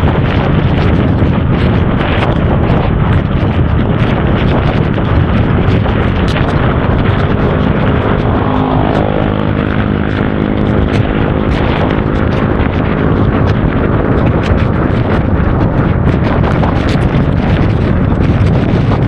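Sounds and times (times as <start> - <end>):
wind buffeting microphone: 0.0 - 19.0
scooter engine hum: 5.1 - 16.8.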